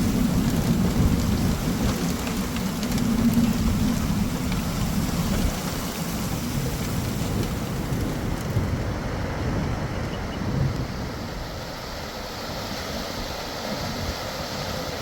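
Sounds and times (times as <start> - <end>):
heavy rain falling: 0.0 - 9.9.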